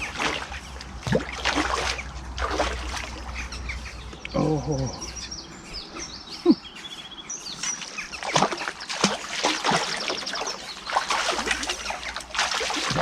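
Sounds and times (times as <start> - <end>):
fish splashing in water: 0.0 - 3.5, 7.6 - 13.0
small birds chirping: 0.0 - 13.0.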